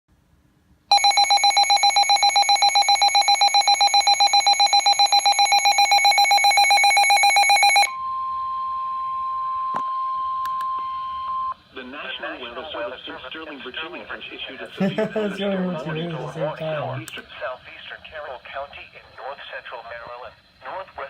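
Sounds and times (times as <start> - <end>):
rapid electronic beeping alarm: 0.9 - 9.1.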